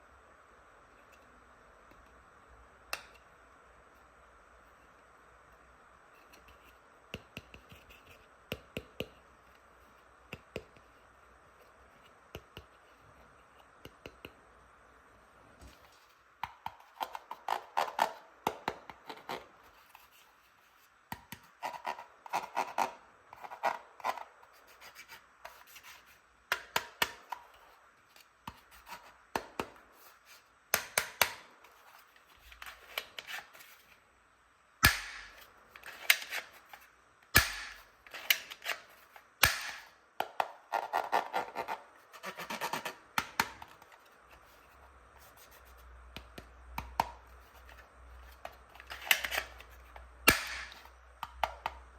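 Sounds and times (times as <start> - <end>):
sharp plastic snaps: 34.8 - 36.5, 37.3 - 38.8, 39.4 - 40.5, 50.3 - 51.8.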